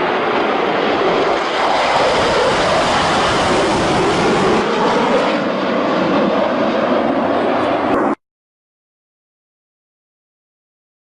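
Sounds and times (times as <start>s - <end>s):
fighter jet engine roar: 0.0s - 8.2s.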